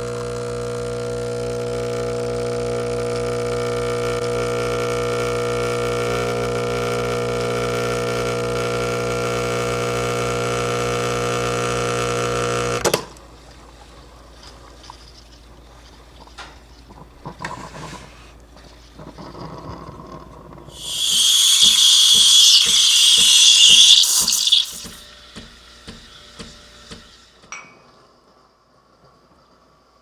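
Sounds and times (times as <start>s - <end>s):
espresso machine pump buzzing: 20.8s - 25.0s.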